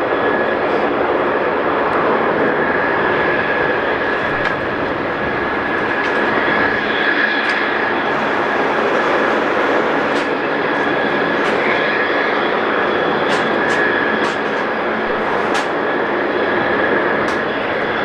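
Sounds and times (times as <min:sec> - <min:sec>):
aircraft engines roaring: 0:00.0 - 0:18.0.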